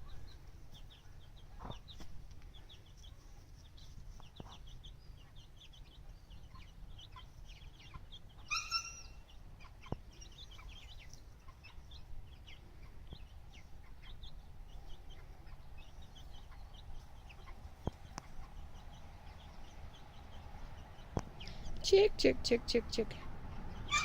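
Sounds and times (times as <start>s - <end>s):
chickens chirping and peeping: 0.0s - 24.0s
chicken call: 8.5s - 9.2s.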